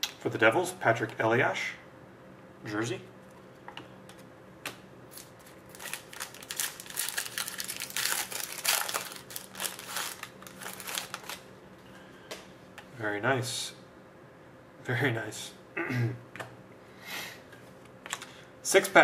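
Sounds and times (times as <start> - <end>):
cards and packs crinkling: 5.1 - 11.4.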